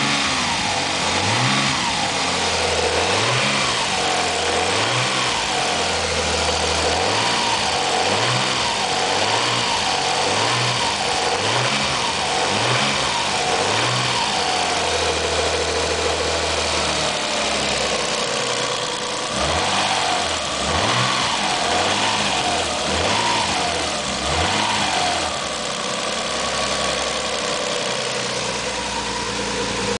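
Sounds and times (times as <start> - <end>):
car engine revving and idling: 0.0 - 29.9
engine clicking: 13.2 - 29.9.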